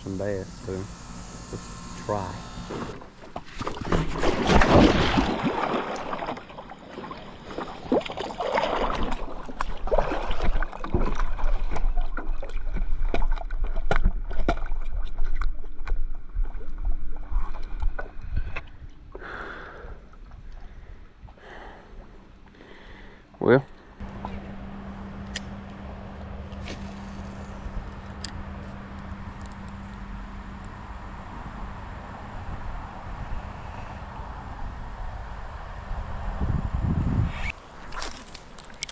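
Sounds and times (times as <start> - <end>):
water splashing and sloshing: 2.8 - 19.2, 37.5 - 38.9.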